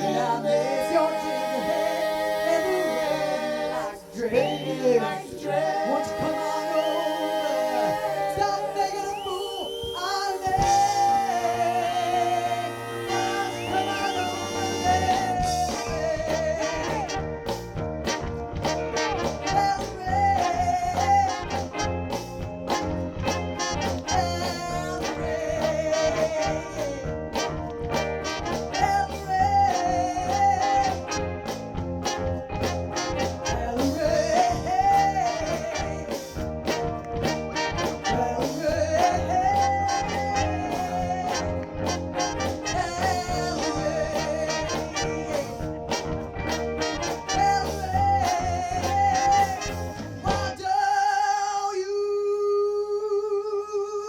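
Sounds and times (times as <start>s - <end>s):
bass: 0.0s - 50.9s
horn section: 0.0s - 51.2s
drums: 5.6s - 50.8s
wavering lead melody: 10.2s - 50.5s.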